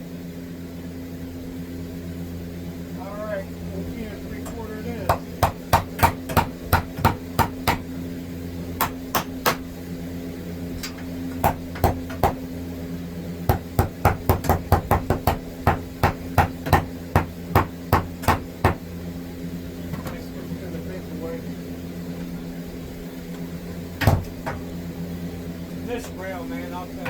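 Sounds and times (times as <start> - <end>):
hammer driving nails: 5.1 - 7.8, 8.8 - 9.7, 10.9 - 12.4, 13.5 - 18.8, 24.0 - 24.6.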